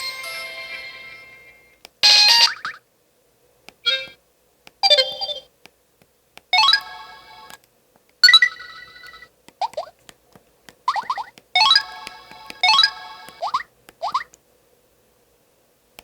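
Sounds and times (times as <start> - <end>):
electronic alert tones: 4.8 - 5.5, 10.9 - 14.3.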